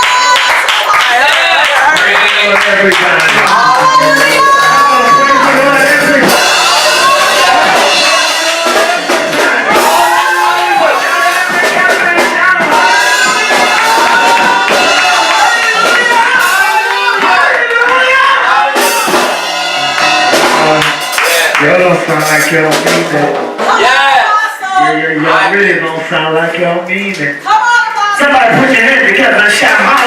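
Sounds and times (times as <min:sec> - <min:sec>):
church praise music with drums: 0:00.0 - 0:30.0
many voices singing: 0:03.5 - 0:21.5.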